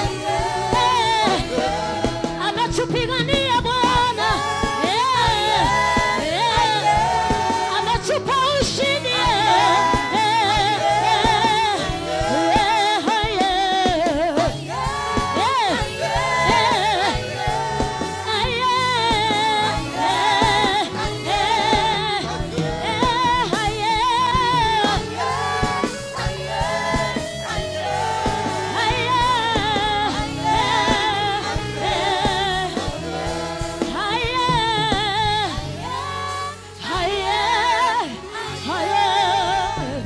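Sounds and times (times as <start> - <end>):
gospel voices singing: 0.0 - 40.0
instrumental backing: 0.0 - 40.0.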